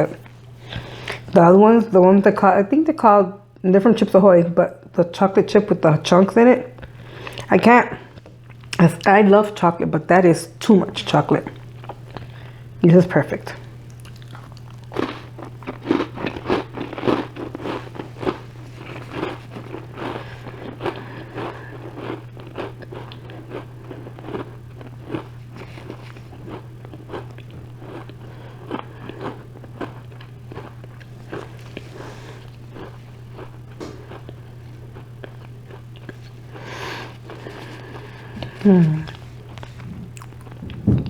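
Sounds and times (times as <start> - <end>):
steady low hum: 0.0 - 41.0
cookie crunching: 13.1 - 41.0.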